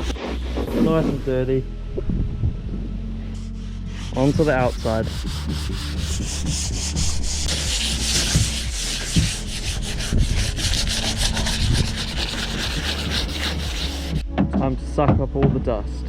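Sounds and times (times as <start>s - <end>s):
sanding rasping hiss: 3.5s - 14.2s.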